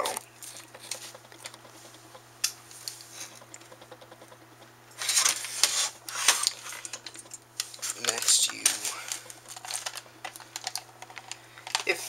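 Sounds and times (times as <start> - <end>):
low mains hum: 0.0 - 12.0
scraping and rattling: 5.0 - 12.0.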